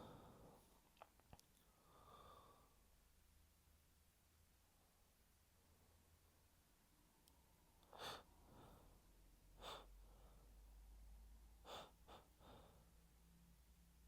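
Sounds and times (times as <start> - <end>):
person gasping breaths: 0.0 - 0.7, 1.7 - 2.8, 7.9 - 9.0, 9.6 - 10.6, 11.6 - 13.0
soft breath out: 0.0 - 0.8, 1.6 - 2.9, 7.9 - 10.7, 11.6 - 13.0.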